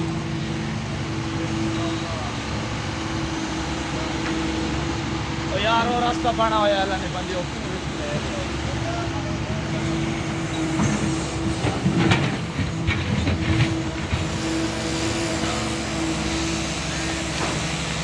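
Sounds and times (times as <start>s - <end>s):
diesel engine running: 0.0s - 18.0s
knocks and clatter: 10.6s - 14.4s.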